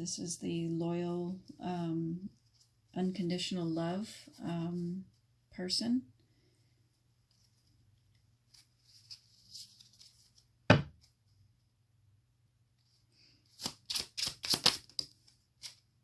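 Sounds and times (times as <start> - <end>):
crisp card clicks and snaps: 13.6 - 15.8.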